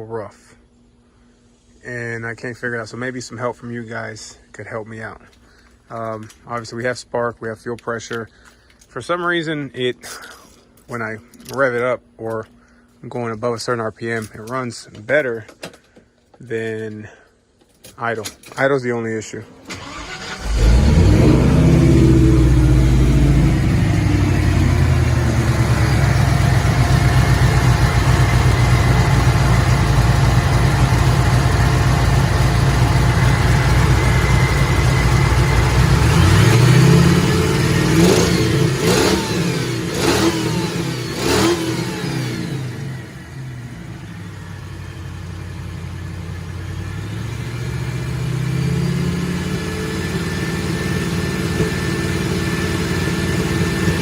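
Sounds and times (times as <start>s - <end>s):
engine revving: 19.7s - 44.5s, 46.8s - 54.0s
engine rough idle: 19.8s - 38.8s, 49.4s - 54.0s.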